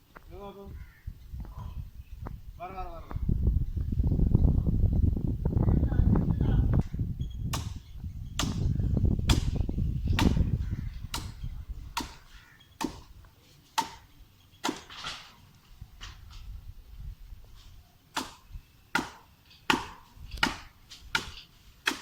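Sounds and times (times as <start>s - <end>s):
hand chopping wood: 13.8s - 14.0s, 18.2s - 18.4s, 19.0s - 22.0s.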